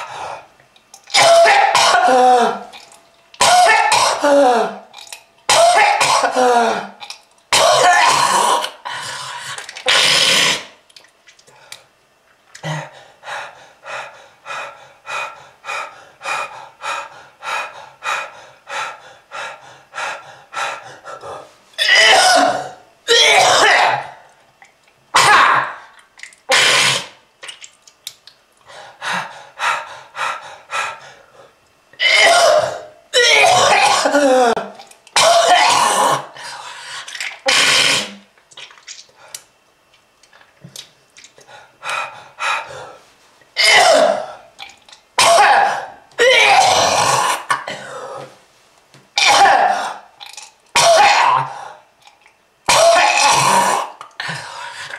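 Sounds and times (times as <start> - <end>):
person hacking coughs: 1.2 - 2.5, 3.4 - 4.3, 5.5 - 6.5, 7.5 - 8.6, 21.8 - 24.1, 32.0 - 34.3, 35.2 - 36.2, 43.6 - 44.3, 45.2 - 48.0, 49.2 - 50.0, 50.8 - 51.5, 52.7 - 53.7.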